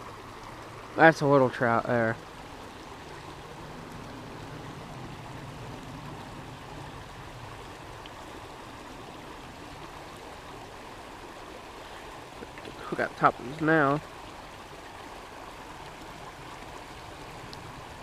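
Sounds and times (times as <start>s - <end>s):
stream water rushing over rapids: 0.0s - 18.0s.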